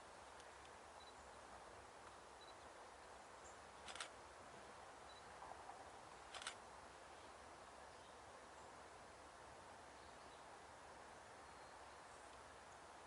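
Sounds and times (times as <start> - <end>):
faint background hiss: 0.0 - 13.0
clusters of clicks: 3.8 - 4.1, 6.3 - 6.6.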